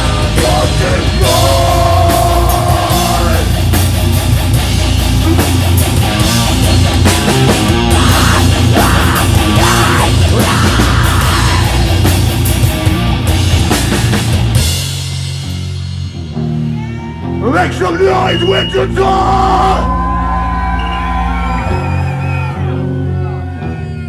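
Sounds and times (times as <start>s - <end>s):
drum kit with cymbals: 0.0s - 17.1s
distorted electric guitars: 0.0s - 24.0s.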